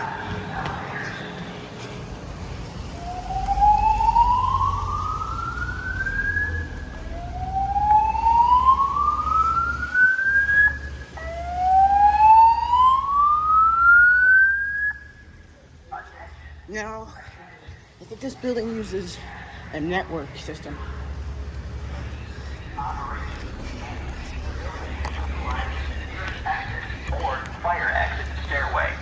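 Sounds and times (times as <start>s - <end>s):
slow-whoop evacuation tone: 2.6s - 15.4s
low rumble: 19.2s - 29.0s.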